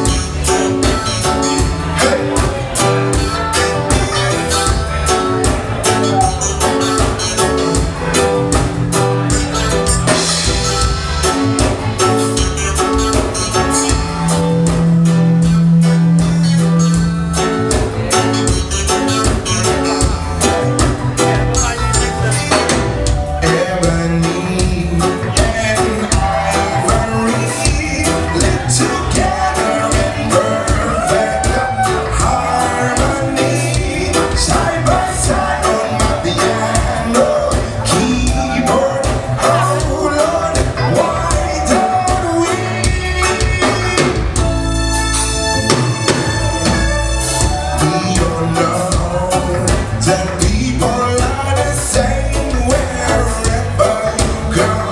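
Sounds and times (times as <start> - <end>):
person singing: 0.0 - 44.8, 45.5 - 54.9
band playing a song: 0.0 - 54.9.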